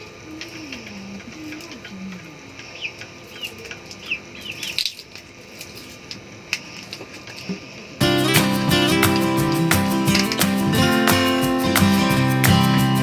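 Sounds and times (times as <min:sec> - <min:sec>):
strummed acoustic guitar music: 0:08.0 - 0:13.0.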